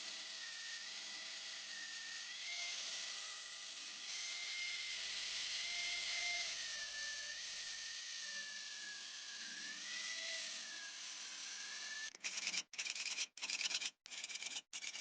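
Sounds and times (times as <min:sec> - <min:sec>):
power grinder grinding steel: 0:06.0 - 0:15.0.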